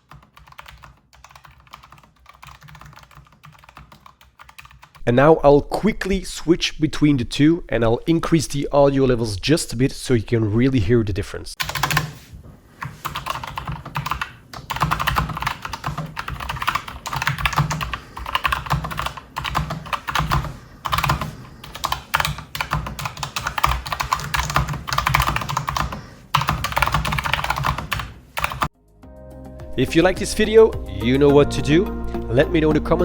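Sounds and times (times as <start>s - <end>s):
fast typing on mechanical keyboard: 0.0s - 5.0s, 11.6s - 12.2s, 12.8s - 28.7s.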